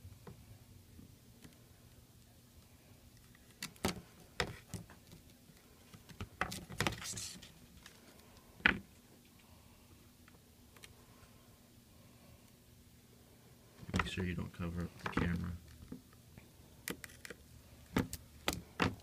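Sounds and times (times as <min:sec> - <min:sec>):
scratchy rustle: 0:07.0 - 0:07.6.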